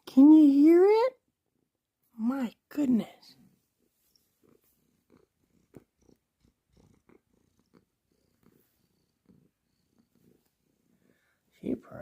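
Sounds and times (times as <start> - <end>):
cat purring: 3.0 - 12.0.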